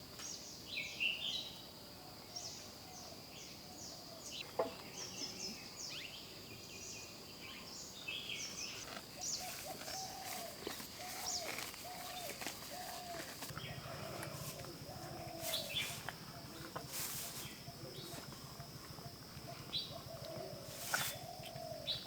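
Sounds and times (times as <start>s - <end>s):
birds chirping: 4.2s - 22.0s
sweeping bird call: 9.2s - 18.2s, 19.4s - 22.0s
high-pitched insect drone: 9.3s - 22.0s.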